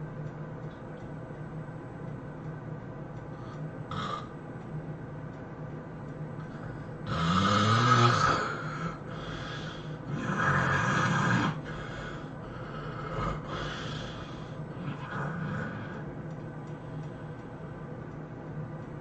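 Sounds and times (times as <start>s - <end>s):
person snoring loudly: 3.9s - 4.3s, 7.0s - 16.0s.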